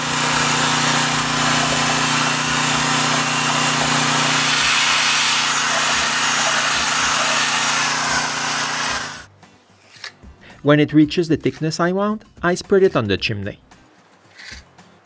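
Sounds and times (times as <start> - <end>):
power tool motor whining: 0.0 - 9.3
mortar scraping: 14.3 - 14.7.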